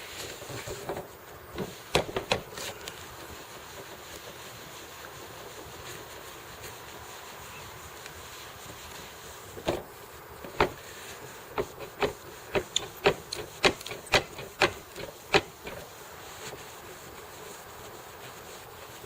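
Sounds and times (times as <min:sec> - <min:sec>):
steady background hiss: 0:00.0 - 0:19.0
sharp knocks: 0:01.6 - 0:02.5.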